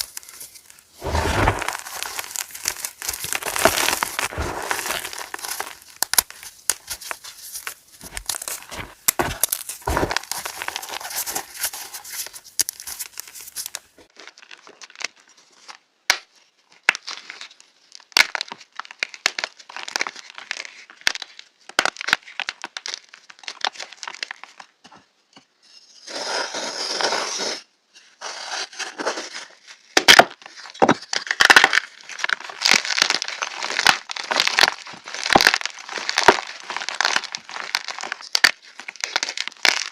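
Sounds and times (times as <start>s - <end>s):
chalk crushed and crumbling: 0.0s - 14.0s, 25.7s - 39.9s.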